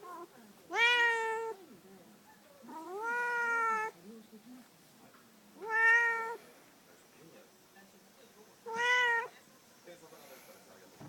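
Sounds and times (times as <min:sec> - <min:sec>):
cat meowing: 0:00.0 - 0:01.6, 0:02.6 - 0:04.0, 0:05.6 - 0:06.4, 0:08.6 - 0:09.3.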